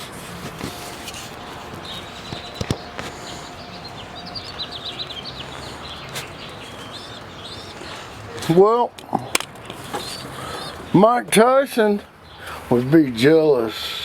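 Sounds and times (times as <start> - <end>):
background noise: 0.0 - 14.0
sparrows chirping: 0.0 - 14.0.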